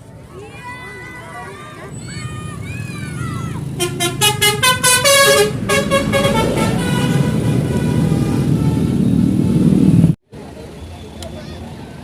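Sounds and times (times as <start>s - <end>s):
bus engine rumble: 0.0s - 12.0s
multi-tone bus horn: 3.8s - 9.4s.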